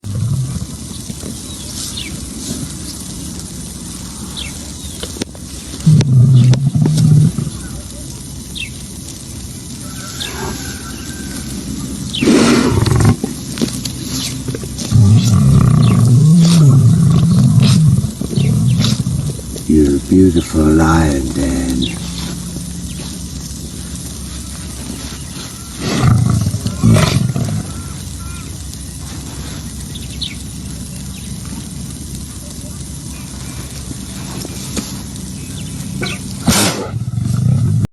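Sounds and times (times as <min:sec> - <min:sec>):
lion sneezing: 0:12.2 - 0:13.3, 0:14.2 - 0:22.4, 0:25.7 - 0:29.4, 0:35.9 - 0:37.8.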